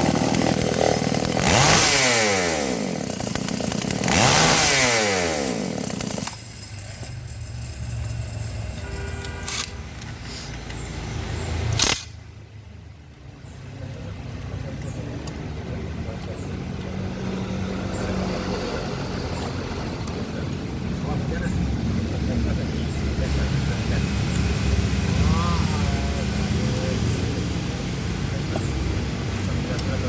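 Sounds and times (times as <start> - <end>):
chainsaw engine revving and idling: 0.0 - 7.4, 14.0 - 30.0.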